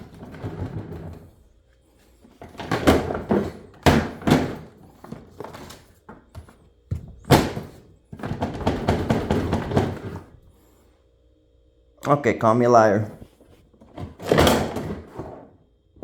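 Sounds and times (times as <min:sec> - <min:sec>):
plastic tool box thunks and clacks: 0:00.0 - 0:01.4, 0:02.3 - 0:10.4, 0:13.8 - 0:15.5.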